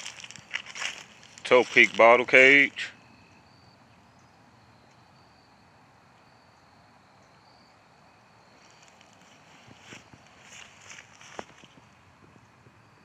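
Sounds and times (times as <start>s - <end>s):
background hiss: 0.0s - 3.8s.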